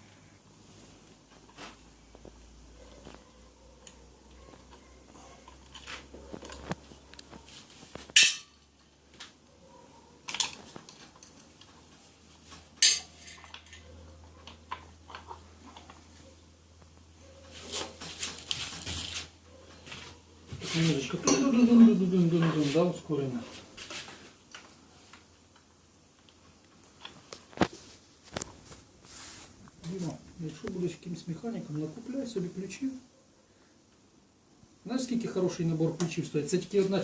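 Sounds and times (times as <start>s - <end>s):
metal tools clinking: 8.2s - 8.8s, 10.3s - 11.7s, 12.8s - 13.9s, 21.2s - 21.6s.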